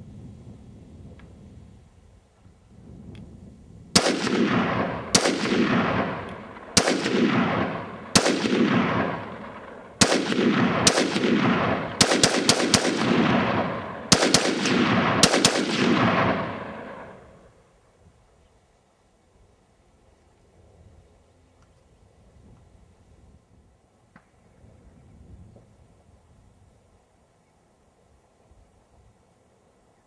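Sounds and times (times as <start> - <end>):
rifle shots with echo: 4.0 - 17.5.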